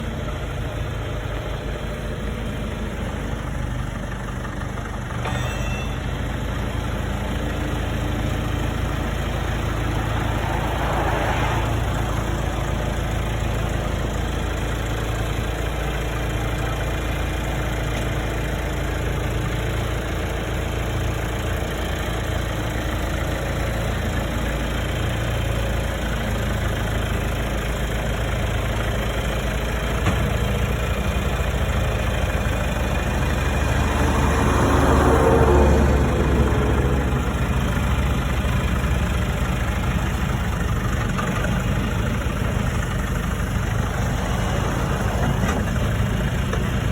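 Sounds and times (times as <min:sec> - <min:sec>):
loader engine idling: 0:00.0 - 0:46.9.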